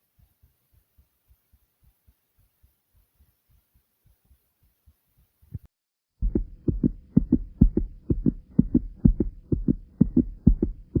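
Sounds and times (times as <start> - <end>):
heartbeat double thumps: 6.2 - 11.0.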